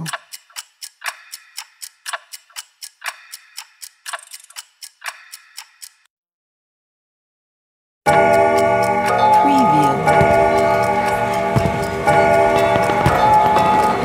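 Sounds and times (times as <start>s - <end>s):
clock ticking: 0.0s - 6.1s, 8.1s - 14.0s.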